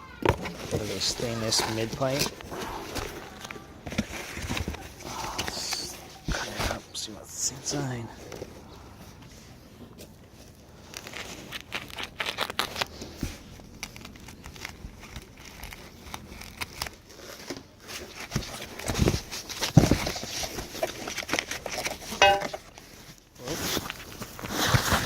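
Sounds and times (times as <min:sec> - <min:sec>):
cardboard scraping and tearing: 0:00.2 - 0:07.0, 0:09.3 - 0:25.0
box thumps: 0:18.4 - 0:20.9, 0:22.1 - 0:22.6.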